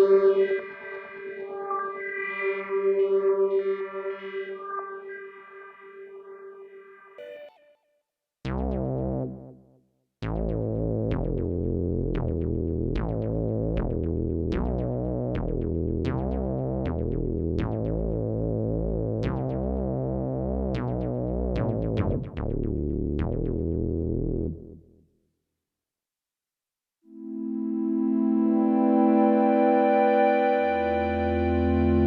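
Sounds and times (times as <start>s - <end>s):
synthesizer chords over deep bass: 8.5s - 9.6s, 10.2s - 24.8s, 27.4s - 32.0s.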